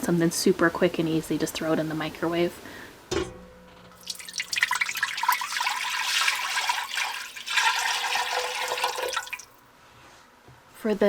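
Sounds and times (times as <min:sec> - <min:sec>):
liquid pouring into pot: 0:04.0 - 0:09.6.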